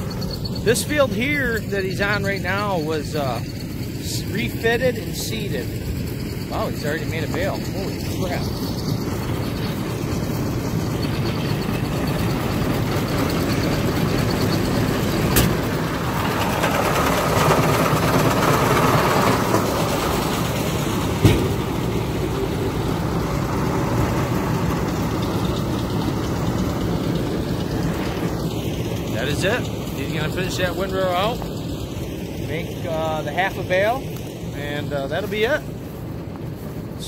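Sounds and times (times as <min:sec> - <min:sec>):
tractor engine running: 0:00.0 - 0:37.0
sharp knocks: 0:21.2 - 0:21.6.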